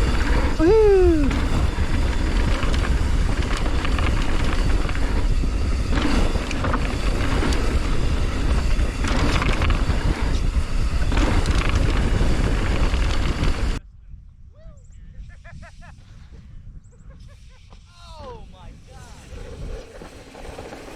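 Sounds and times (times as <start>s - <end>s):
wind rushing over microphone: 0.0s - 20.8s
bike tyres rolling over dirt: 1.3s - 13.8s, 18.9s - 20.9s.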